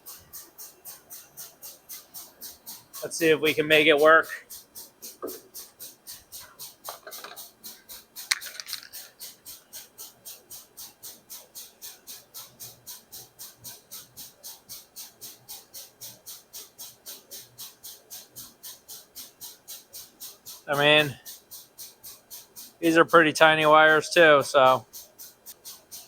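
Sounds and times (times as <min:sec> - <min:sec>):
high-pitched ticking: 0:00.0 - 0:26.0
faint handling sounds: 0:08.3 - 0:09.2.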